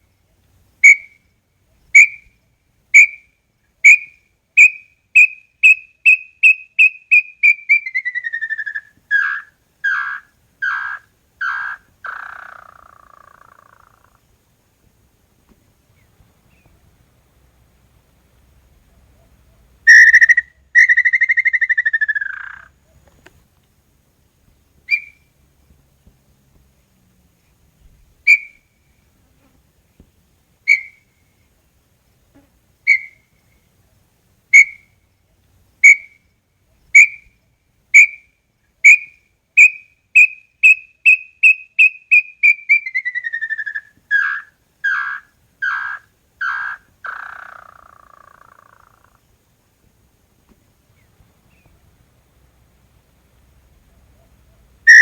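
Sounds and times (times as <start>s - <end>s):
bird whistling song: 0.8s - 1.2s, 1.9s - 2.3s, 3.0s - 14.1s, 19.9s - 23.2s, 24.9s - 25.3s, 28.3s - 28.7s, 30.7s - 31.1s, 32.9s - 33.3s, 34.5s - 34.9s, 35.8s - 36.2s, 36.9s - 37.3s, 38.0s - 49.2s.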